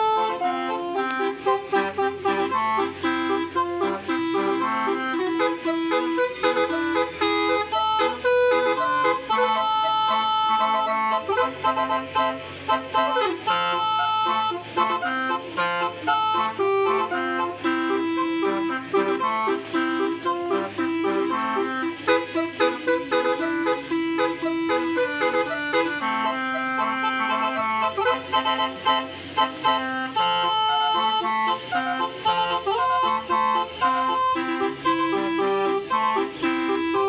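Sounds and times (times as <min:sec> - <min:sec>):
reedy melodic tune: 0:00.0 - 0:37.0.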